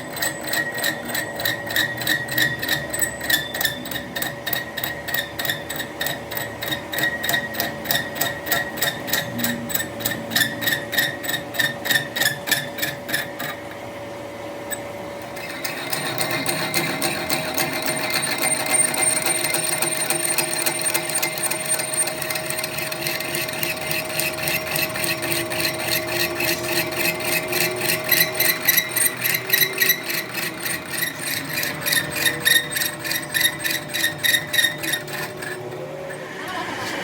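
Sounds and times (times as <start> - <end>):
machine hum: 0.0 - 37.0
machine tool clattering: 14.7 - 36.2.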